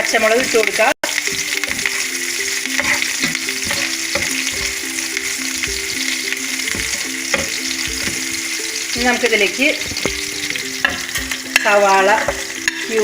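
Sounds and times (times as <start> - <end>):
garlic sizzling in oil: 0.0 - 13.0
spatula knocking against pan: 1.2 - 13.0.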